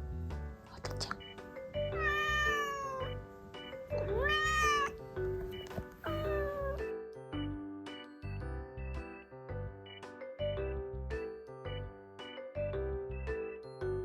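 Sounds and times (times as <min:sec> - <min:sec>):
background music with steady beat: 0:00.0 - 0:14.0
cat meowing: 0:01.8 - 0:03.2, 0:04.0 - 0:05.1, 0:06.0 - 0:06.9.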